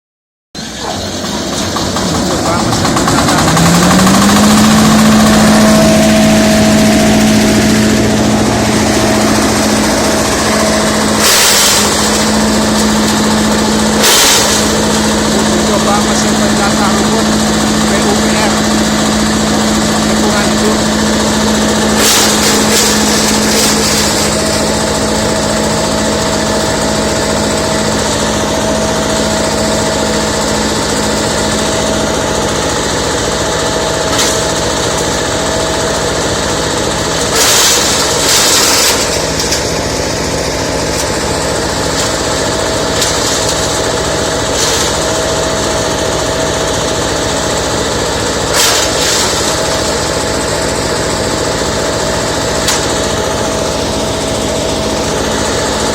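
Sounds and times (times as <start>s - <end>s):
diesel chopper whining: 0.6s - 55.9s
bursts of rushing noise: 1.0s - 32.1s.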